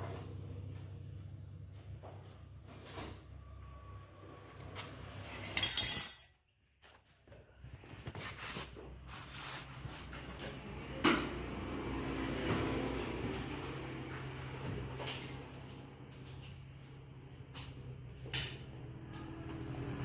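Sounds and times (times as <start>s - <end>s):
metal clinking and clanking: 5.4s - 6.4s, 17.5s - 18.8s.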